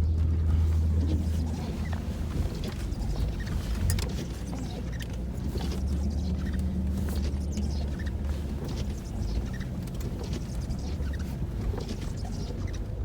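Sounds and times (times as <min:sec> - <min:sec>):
small crackles and creaks: 0:00.0 - 0:13.0
vehicle engine low drone: 0:00.0 - 0:13.0.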